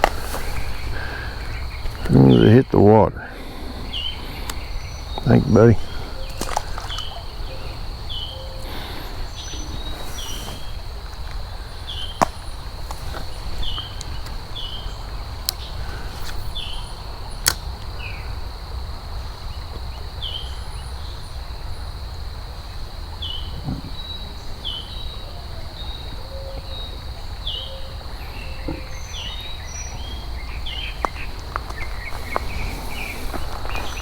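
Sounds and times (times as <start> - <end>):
high insect drone: 0.0 - 34.0
sharp clicks: 17.4 - 17.8.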